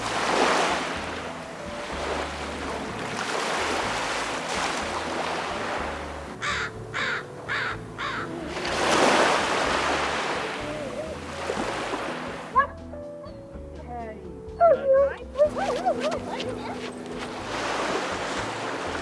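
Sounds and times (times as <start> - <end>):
small waves washing onto beach: 0.0 - 12.6, 15.4 - 19.0
bird harsh calls: 6.4 - 8.4.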